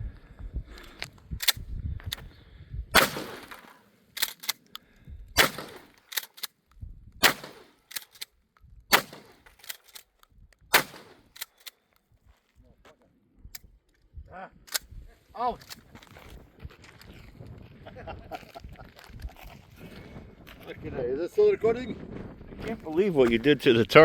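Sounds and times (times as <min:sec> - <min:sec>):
sharp clicks: 0:01.4 - 0:02.3, 0:03.0 - 0:06.5, 0:07.2 - 0:08.3, 0:08.9 - 0:11.8
shotgun blasts: 0:02.9 - 0:03.8, 0:05.4 - 0:06.4, 0:07.2 - 0:08.1, 0:08.9 - 0:09.8, 0:10.7 - 0:11.5.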